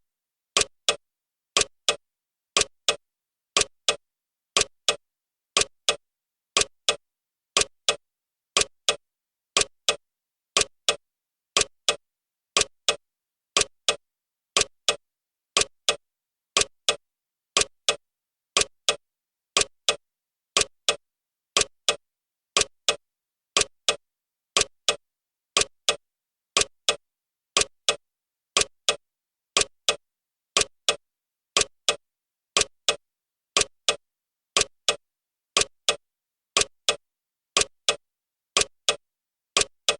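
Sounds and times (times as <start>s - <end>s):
clock ticking: 0.6s - 1.0s, 1.6s - 2.0s, 2.6s - 3.0s, 3.6s - 4.0s, 4.6s - 5.0s, 5.6s - 6.0s, 6.6s - 7.0s, 7.6s - 8.0s, 8.6s - 9.0s, 9.6s - 10.0s, 10.6s - 11.0s, 11.6s - 12.0s, 12.6s - 13.0s, 13.6s - 14.0s, 14.6s - 15.0s, 15.6s - 16.0s, 16.6s - 17.0s, 17.6s - 18.0s, 18.6s - 19.0s, 19.6s - 20.0s, 20.6s - 21.0s, 21.6s - 22.0s, 22.6s - 23.0s, 23.6s - 24.0s, 24.6s - 25.0s, 25.6s - 26.0s, 26.6s - 27.0s, 27.6s - 28.0s, 28.6s - 29.0s, 29.6s - 30.0s, 30.6s - 31.0s, 31.6s - 32.0s, 32.6s - 33.0s, 33.6s - 34.0s, 34.6s - 35.0s, 35.6s - 36.0s, 36.6s - 37.0s, 37.6s - 38.0s, 38.6s - 39.0s, 39.6s - 39.9s.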